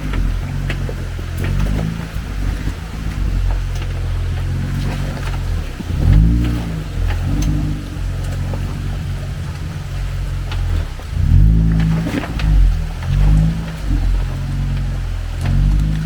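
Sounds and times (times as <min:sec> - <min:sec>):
engine revving: 0:00.0 - 0:16.0.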